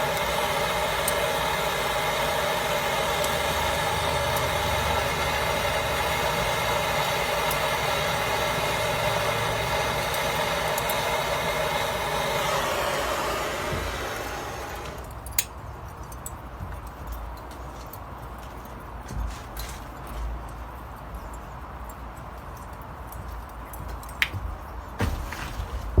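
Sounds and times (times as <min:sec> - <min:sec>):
charcoal lighter whirring: 0:00.0 - 0:15.2.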